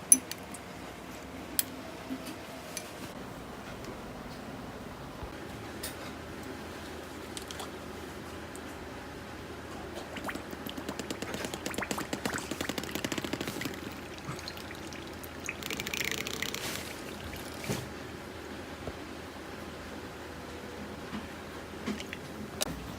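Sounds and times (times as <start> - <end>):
wet mouth clicks and slurps: 10.2 - 17.8.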